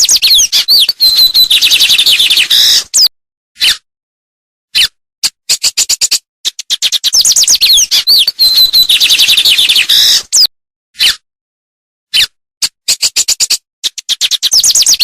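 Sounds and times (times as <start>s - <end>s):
songbird singing: 0.0s - 3.1s, 6.9s - 10.2s.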